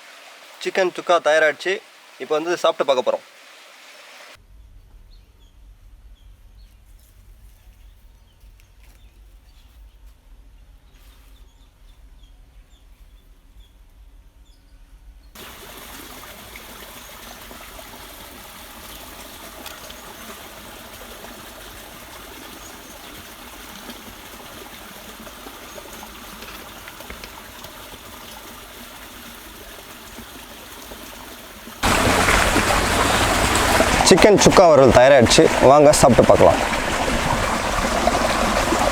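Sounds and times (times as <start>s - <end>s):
low hum: 31.8s - 38.9s
steady rushing noise: 31.8s - 38.9s.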